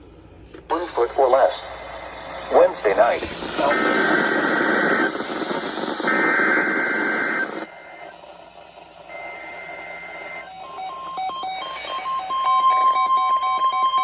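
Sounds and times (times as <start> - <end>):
radio static: 0.6 - 10.4.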